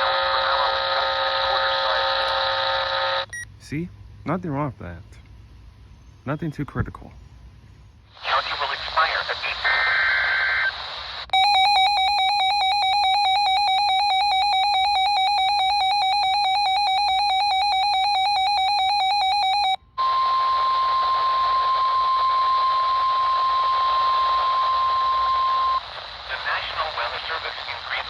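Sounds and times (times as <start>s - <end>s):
steady warning alarm tone: 11.3s - 25.8s.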